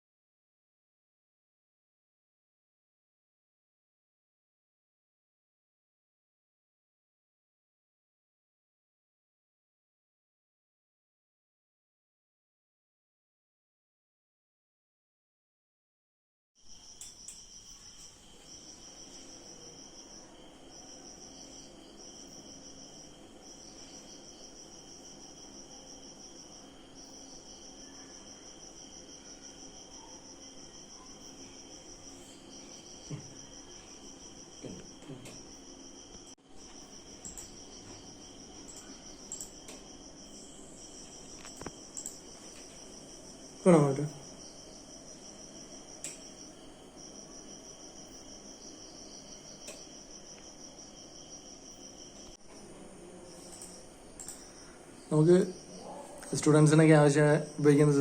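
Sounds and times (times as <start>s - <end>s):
faint steady hum: 16.6s - 58.0s
insects trilling: 16.6s - 58.0s.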